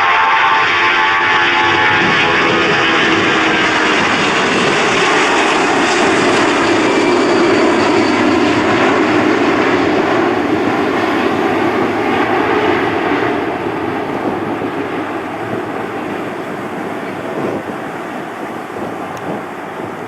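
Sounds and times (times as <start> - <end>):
airliner engines rushing: 0.0 - 20.0.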